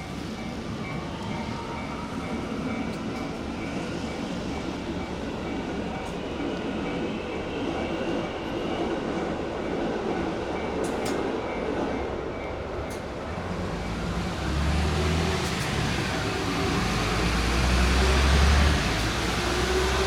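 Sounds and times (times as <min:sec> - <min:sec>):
electric train rumbling past: 0:00.0 - 0:20.0.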